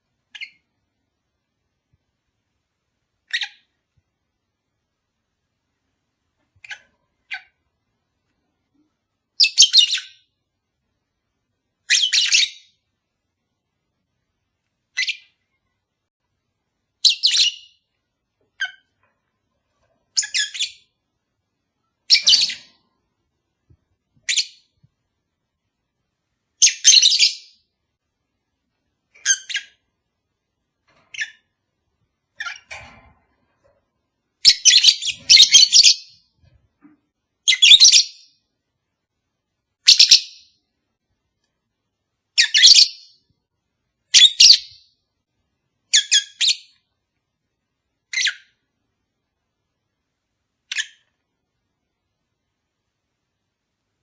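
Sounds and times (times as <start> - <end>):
lovebirds chirping: 0.2 - 0.8, 3.2 - 3.8, 6.5 - 7.6, 9.3 - 10.4, 11.8 - 12.8, 14.9 - 15.7, 17.0 - 19.1, 20.0 - 21.0, 21.8 - 22.9, 24.2 - 24.9, 26.5 - 27.8, 29.1 - 29.9, 31.0 - 31.6, 32.2 - 32.9, 34.4 - 36.4, 37.4 - 38.5, 39.8 - 40.7, 42.3 - 43.3, 44.1 - 45.0, 45.9 - 46.9, 48.0 - 48.6, 50.6 - 51.2.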